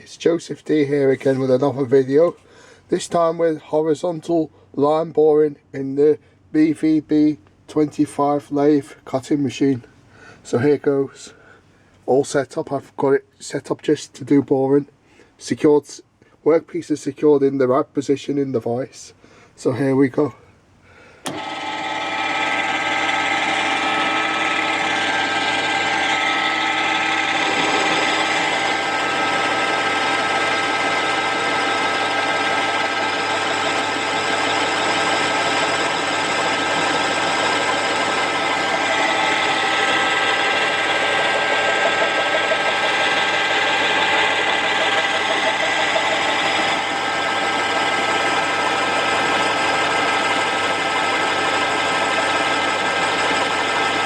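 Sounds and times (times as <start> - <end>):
lathe whining: 21.2 - 54.0.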